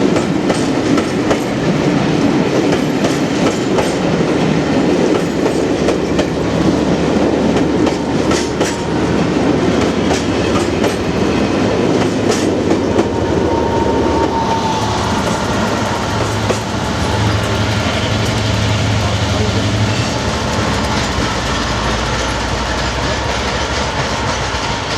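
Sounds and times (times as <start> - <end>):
train rumble on rails: 0.0 - 24.9
wheels clicking over rail joints: 19.9 - 24.9.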